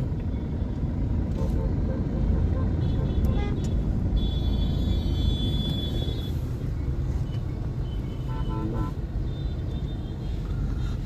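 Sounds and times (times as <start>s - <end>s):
road traffic rumbling: 0.0s - 11.0s
vehicle horn: 1.3s - 6.4s, 8.2s - 9.5s.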